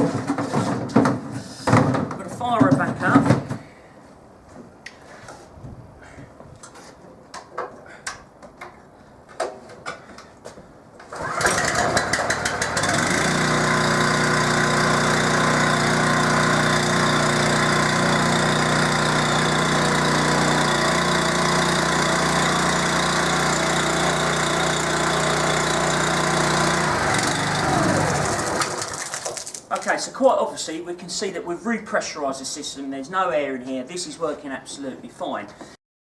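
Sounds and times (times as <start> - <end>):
pressure washer engine running: 11.2 - 29.3.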